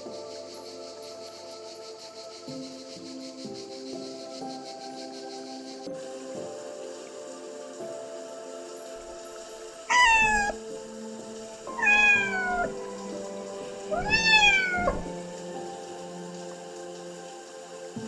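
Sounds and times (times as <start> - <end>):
soft background music: 0.0 - 18.0
animal calling: 9.9 - 10.6, 11.7 - 12.8, 13.9 - 15.1.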